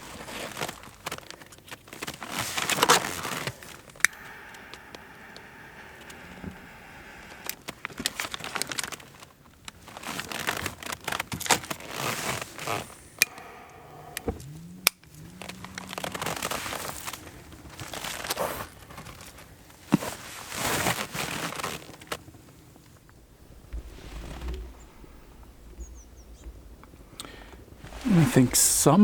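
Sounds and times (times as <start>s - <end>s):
wrapper crinkling and crackling: 7.8s - 12.9s, 15.2s - 22.4s.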